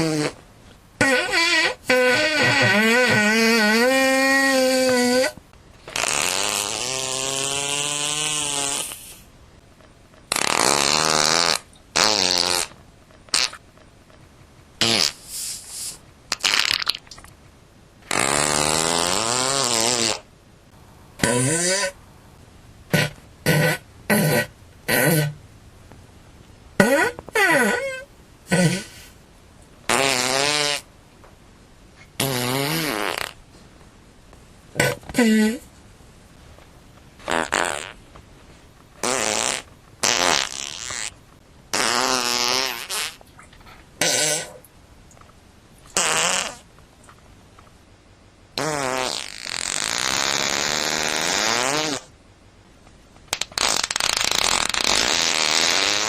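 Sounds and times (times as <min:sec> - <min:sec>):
fart noises: 0:00.0 - 0:00.4, 0:01.0 - 0:09.3, 0:10.3 - 0:13.6, 0:14.8 - 0:17.3, 0:18.0 - 0:20.3, 0:21.2 - 0:22.0, 0:22.9 - 0:25.4, 0:26.8 - 0:29.1, 0:29.9 - 0:30.9, 0:32.1 - 0:33.4, 0:34.7 - 0:35.7, 0:37.2 - 0:38.1, 0:39.0 - 0:44.7, 0:45.9 - 0:46.7, 0:48.6 - 0:52.1, 0:53.3 - 0:56.0.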